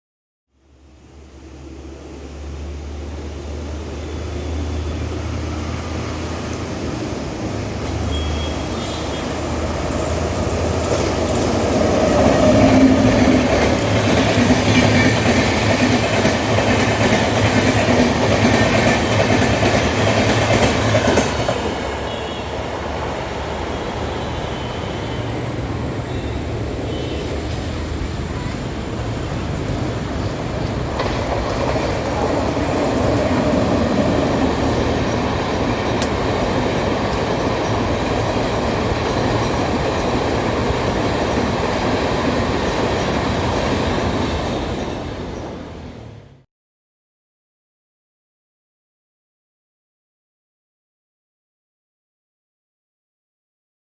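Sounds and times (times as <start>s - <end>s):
train wheels clattering over track: 7.6s - 25.2s, 26.8s - 46.2s.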